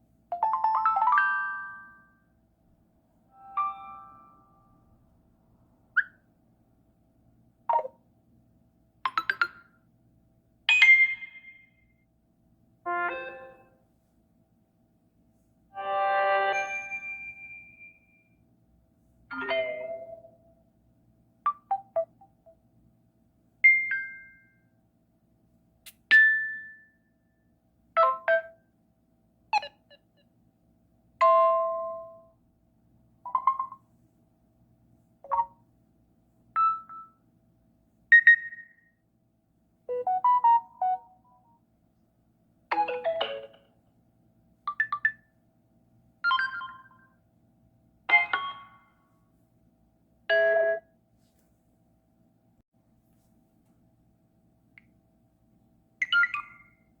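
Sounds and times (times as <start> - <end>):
phone notification chimes: 3.4 - 4.6.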